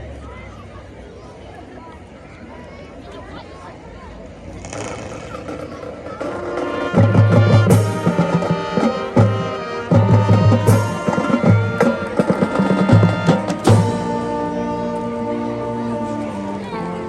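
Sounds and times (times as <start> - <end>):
marching band playing: 4.7 - 17.0
bass drum strokes: 7.0 - 16.4.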